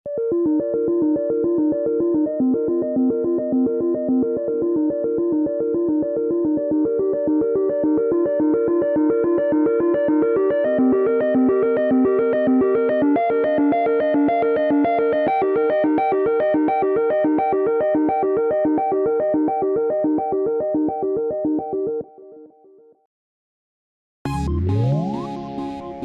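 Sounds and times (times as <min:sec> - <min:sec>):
synthesized alarm melody: 0:24.3 - 0:26.0.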